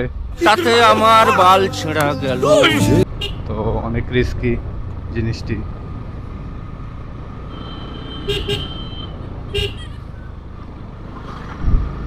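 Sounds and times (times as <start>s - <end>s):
vehicle horn toots: 0.4s - 3.5s.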